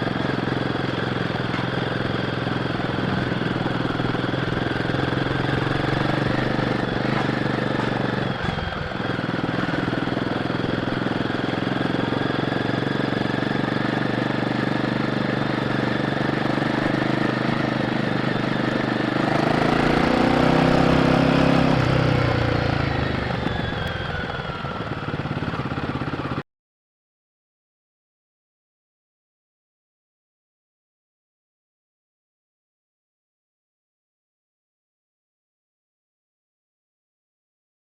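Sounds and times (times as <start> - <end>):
motorcycle engine running: 0.0 - 26.4.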